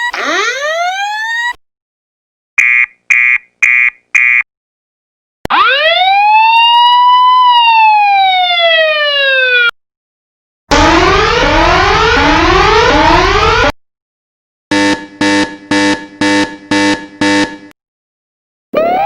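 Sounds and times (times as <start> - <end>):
siren wail: 0.0 - 1.6, 5.5 - 9.8, 10.7 - 13.8, 18.8 - 19.0.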